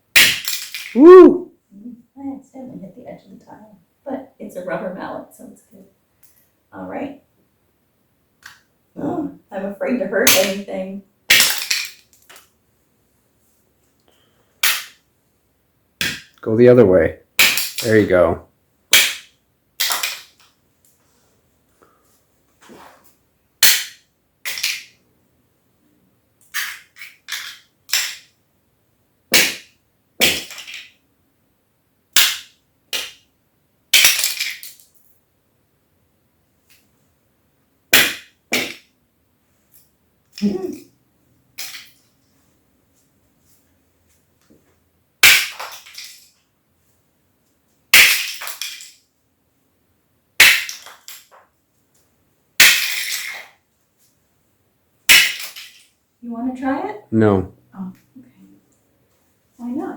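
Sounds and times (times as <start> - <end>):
pieces clattering on tile floor: 0.2 - 1.0, 11.3 - 12.5, 19.8 - 20.5, 23.6 - 24.9, 26.4 - 28.3, 30.2 - 31.0, 34.0 - 35.0, 41.6 - 42.0, 45.2 - 46.4, 48.0 - 49.0, 50.4 - 51.5, 52.6 - 53.6, 55.1 - 56.0.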